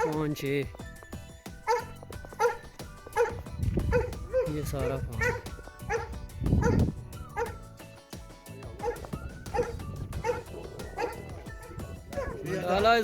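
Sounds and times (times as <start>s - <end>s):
dogs barking and yipping: 0.0s - 0.3s, 1.1s - 13.0s
background music: 0.0s - 13.0s.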